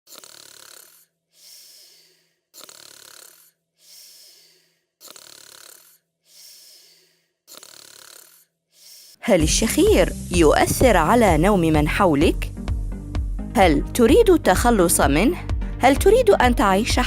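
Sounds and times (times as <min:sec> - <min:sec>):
hissing out-breath: 0:00.1 - 0:09.2
rattling snore: 0:00.1 - 0:09.2.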